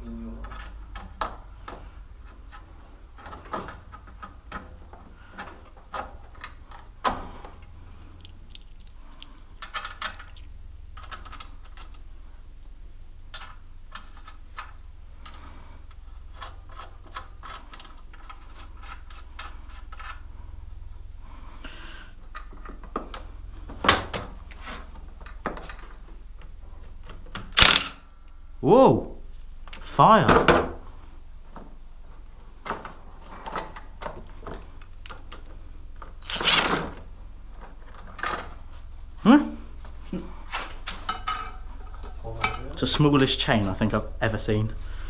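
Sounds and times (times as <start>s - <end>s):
low steady hum: 0.0s - 45.0s.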